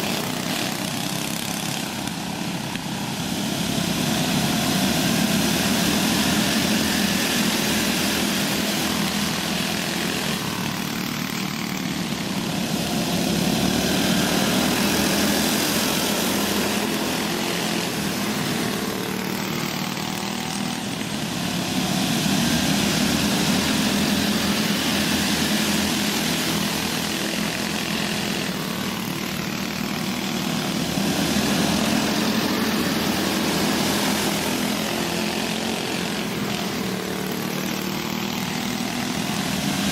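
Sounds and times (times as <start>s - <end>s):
go-kart engines racing: 0.0s - 39.9s.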